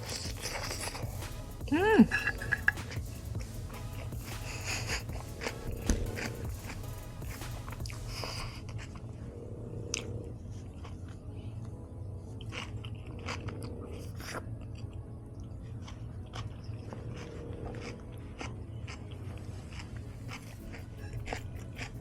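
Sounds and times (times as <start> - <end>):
chewing crisp chips: 0.0 - 3.1, 9.8 - 22.0.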